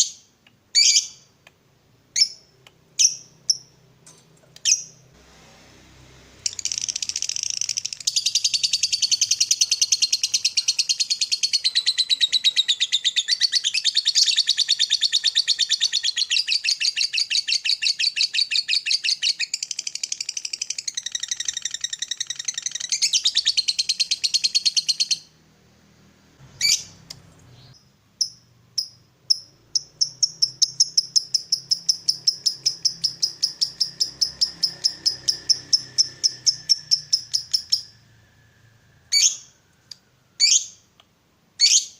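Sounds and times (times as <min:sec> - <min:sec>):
lovebird chattering trill: 0:06.5 - 0:25.2, 0:28.2 - 0:38.0.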